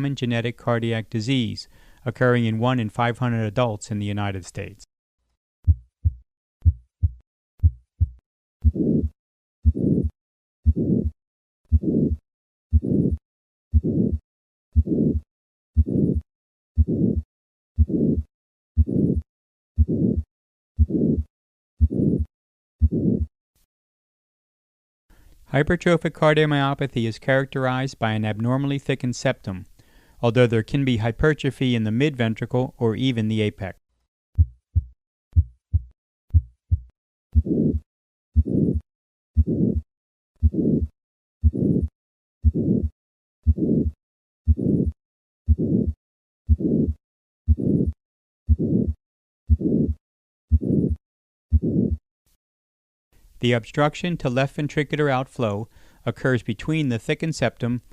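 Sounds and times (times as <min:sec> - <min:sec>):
heartbeat: 0:05.6 - 0:14.2, 0:14.8 - 0:15.2, 0:15.8 - 0:18.2, 0:18.8 - 0:21.2, 0:21.8 - 0:23.3, 0:34.4 - 0:37.8, 0:38.4 - 0:38.8, 0:39.4 - 0:41.8, 0:42.4 - 0:43.9, 0:44.5 - 0:44.7, 0:45.5 - 0:46.9, 0:47.5 - 0:47.8, 0:48.5 - 0:49.8, 0:50.5 - 0:50.8, 0:51.5 - 0:52.0
harsh heart murmur: 0:05.7 - 0:11.1, 0:12.7 - 0:14.2, 0:15.8 - 0:16.2, 0:16.8 - 0:17.2, 0:18.8 - 0:20.2, 0:21.8 - 0:23.3, 0:34.4 - 0:37.5, 0:38.4 - 0:38.7, 0:39.4 - 0:40.7, 0:42.4 - 0:43.7, 0:44.5 - 0:44.7, 0:45.5 - 0:46.8, 0:47.5 - 0:47.8, 0:49.5 - 0:49.7.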